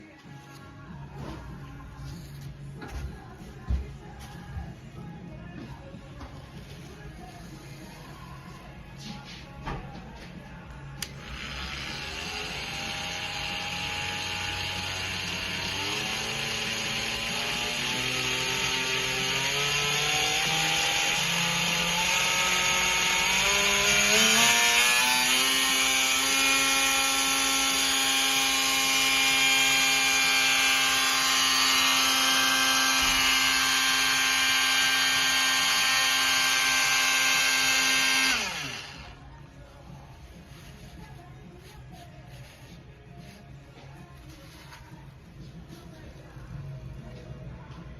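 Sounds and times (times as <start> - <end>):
oscillating multi-tool whine: 11.0 - 39.2.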